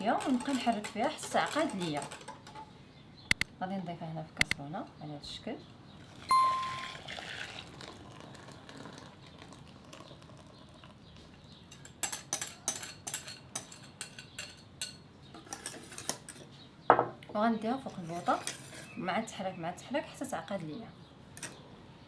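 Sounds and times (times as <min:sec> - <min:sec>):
utensil scraping a saucepan: 0:00.0 - 0:02.6, 0:15.4 - 0:16.4, 0:17.8 - 0:19.0.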